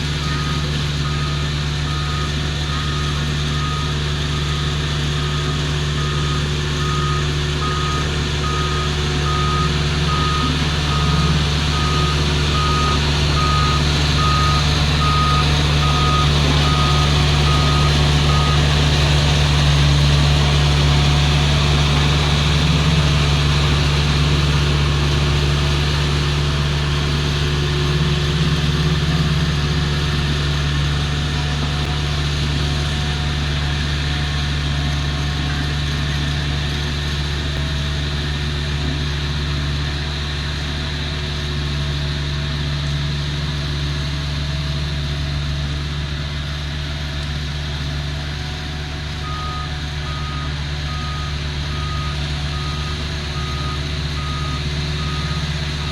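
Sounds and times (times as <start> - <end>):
diesel engine running steadily: 0.0 - 55.9
reversing alarm beeping: 0.2 - 19.2, 49.2 - 55.9.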